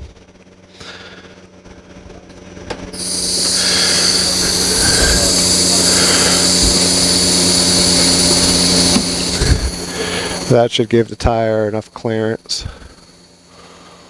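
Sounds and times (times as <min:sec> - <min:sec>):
air hissing out of tire: 0:03.0 - 0:10.6.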